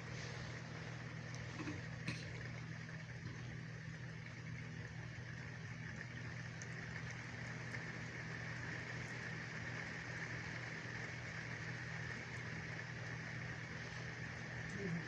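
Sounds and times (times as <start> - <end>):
steady rain: 0.0 - 15.0
faint drip ticks: 1.2 - 3.6, 4.2 - 9.7, 14.0 - 15.0.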